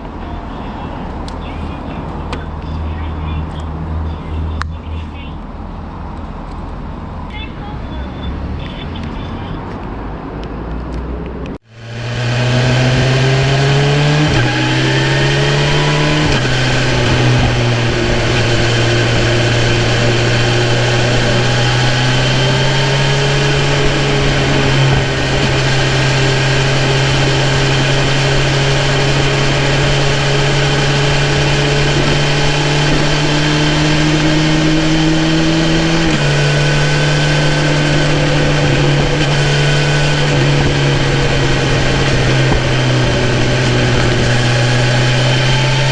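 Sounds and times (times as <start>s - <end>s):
motorcycle engine revving: 11.6s - 45.9s.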